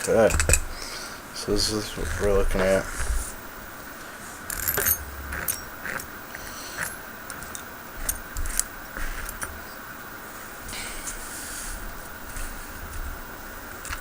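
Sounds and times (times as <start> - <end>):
small metal parts clicking: 0.0 - 0.9, 4.4 - 9.6.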